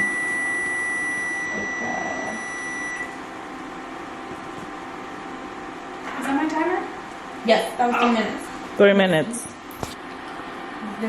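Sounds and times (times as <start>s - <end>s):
high-pitched timer alarm tone: 0.0s - 3.1s.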